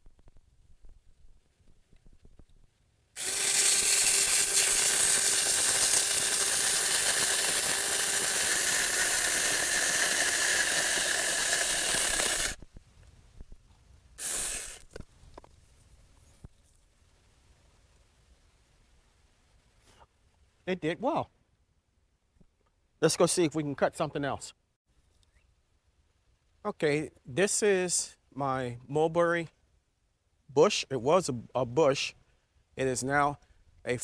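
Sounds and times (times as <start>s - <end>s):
electric chainsaw cutting branch: 3.2s - 12.6s, 14.2s - 15.0s.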